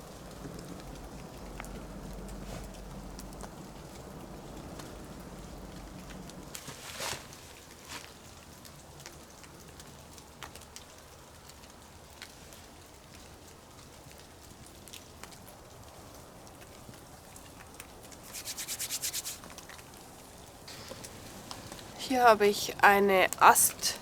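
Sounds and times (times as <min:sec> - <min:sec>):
meltwater dripping: 0:00.0 - 0:06.8
soft hiss: 0:17.9 - 0:24.0
rubbing strokes: 0:18.2 - 0:19.5.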